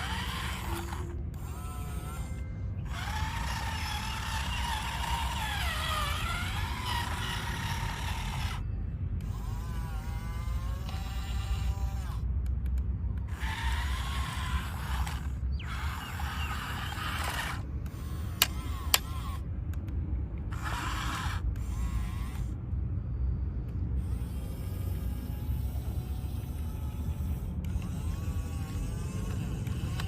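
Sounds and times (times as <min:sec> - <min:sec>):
toy motors and gears whirring: 0:00.0 - 0:22.8, 0:23.6 - 0:30.0
steady low hum: 0:00.0 - 0:30.0
sharp clicks: 0:12.4 - 0:13.4.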